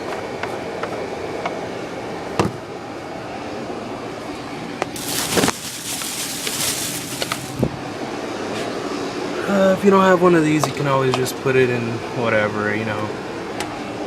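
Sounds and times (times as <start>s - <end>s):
steady background hum: 0.0s - 14.0s
rustling and scraping: 5.0s - 7.7s.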